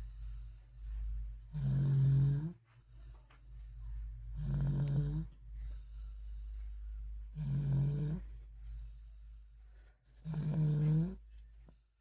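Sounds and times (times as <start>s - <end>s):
steady low hum: 0.0s - 12.0s
child snoring: 1.5s - 2.6s, 4.4s - 5.3s, 7.4s - 8.2s, 10.3s - 11.2s.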